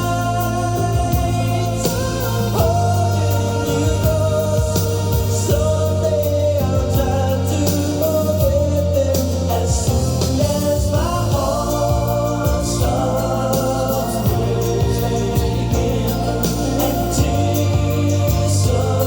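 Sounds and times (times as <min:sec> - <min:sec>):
heavy bass line: 0:00.0 - 0:19.0
person singing: 0:00.0 - 0:19.0.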